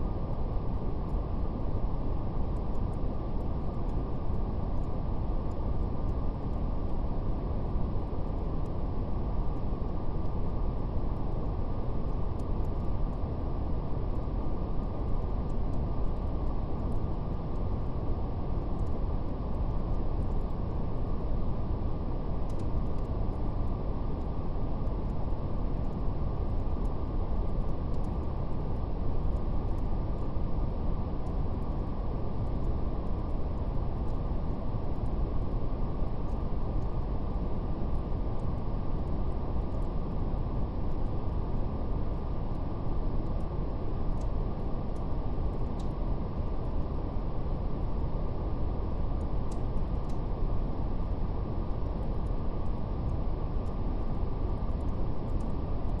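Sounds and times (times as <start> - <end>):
brown noise hiss: 0.0 - 56.0
fire crackles: 0.3 - 38.4.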